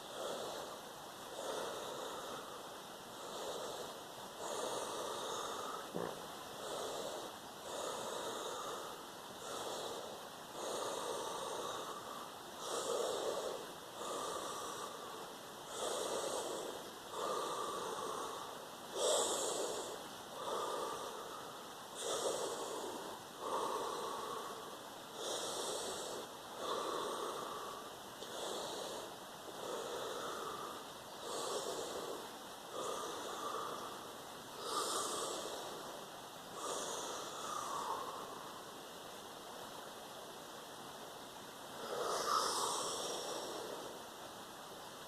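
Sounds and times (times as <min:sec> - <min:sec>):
person breathing forcefully: 0:00.0 - 0:39.0, 0:41.6 - 0:44.2.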